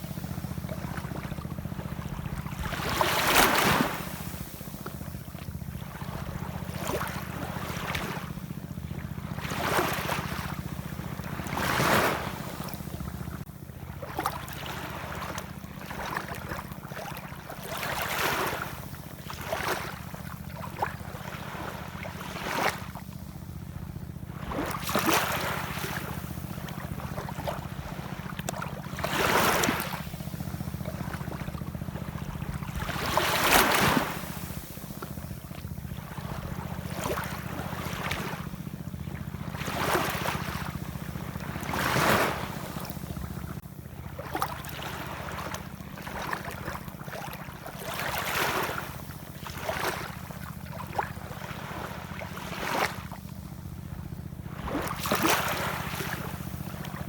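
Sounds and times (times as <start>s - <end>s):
ocean waves washing in: 0.0s - 8.4s, 24.3s - 53.1s, 53.8s - 57.0s.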